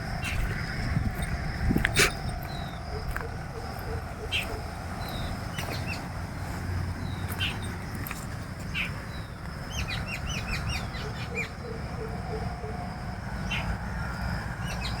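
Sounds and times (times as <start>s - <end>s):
steady low rumble: 0.0s - 10.9s
small birds chirping: 0.0s - 15.0s.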